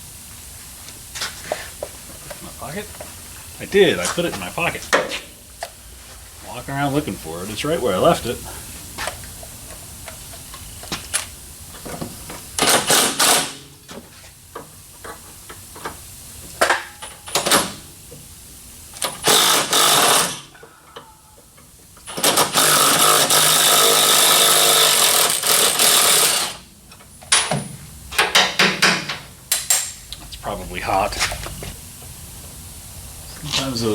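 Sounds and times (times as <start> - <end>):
pneumatic impact wrench hammering: 12.6 - 13.7, 16.6 - 17.9, 19.0 - 20.6, 22.1 - 26.6, 27.2 - 30.0.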